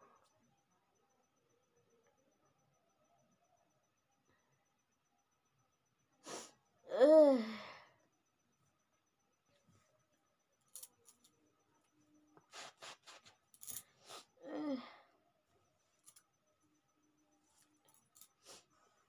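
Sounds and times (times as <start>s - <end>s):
person sniffing: 12.5s - 13.3s, 14.0s - 14.4s.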